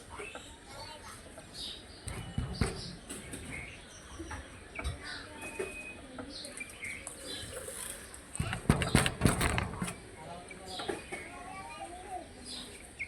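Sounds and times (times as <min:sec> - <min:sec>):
birds chirping: 0:00.0 - 0:13.0
dull thumps: 0:08.4 - 0:10.0.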